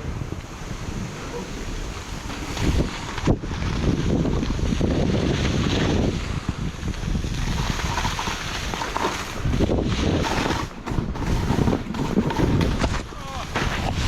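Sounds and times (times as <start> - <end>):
skis sliding through snow: 0.0 - 14.0
wind buffeting microphone: 0.0 - 14.0.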